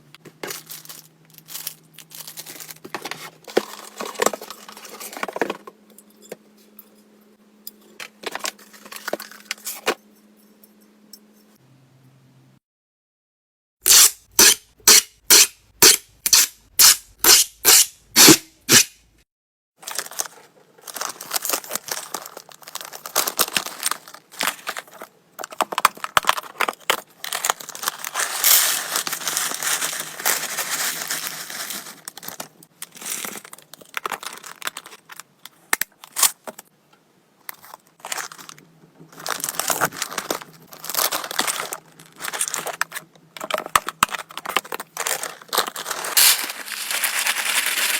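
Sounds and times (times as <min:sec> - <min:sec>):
plastic and paper wrapping crinkling: 0:00.2 - 0:05.6, 0:19.8 - 0:35.3, 0:37.6 - 0:47.9.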